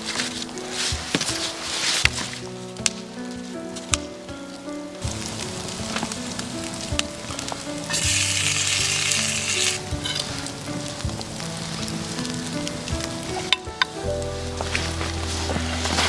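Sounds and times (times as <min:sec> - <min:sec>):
soft background music: 0:00.0 - 0:16.0
sizzling hiss: 0:05.0 - 0:16.0.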